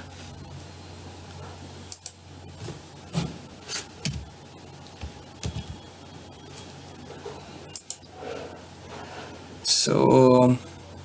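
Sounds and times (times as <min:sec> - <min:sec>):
low electrical hum: 0:00.0 - 0:11.0
keyboard and mouse clicks: 0:04.9 - 0:05.8, 0:07.7 - 0:08.1.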